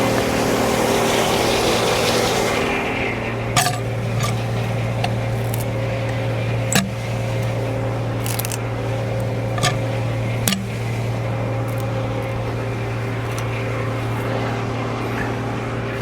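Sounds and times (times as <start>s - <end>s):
sawmill running with low hum: 0.0s - 16.0s
metallic knocks and clanks: 3.5s - 7.6s, 9.5s - 10.9s.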